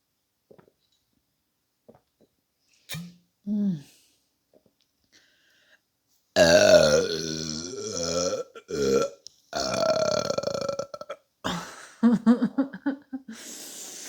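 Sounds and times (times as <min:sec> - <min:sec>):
woman burping: 0:06.4 - 0:11.8.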